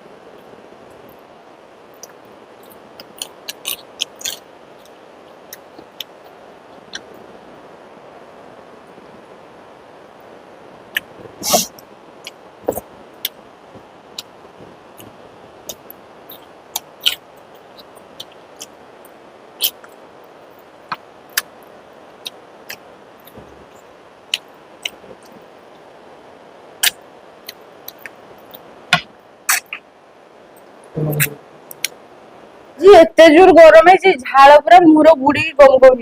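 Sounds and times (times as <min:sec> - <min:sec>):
steady low hiss: 0:00.0 - 0:36.0
mouth clicks and smacks of chewing: 0:02.0 - 0:06.1, 0:31.7 - 0:32.0.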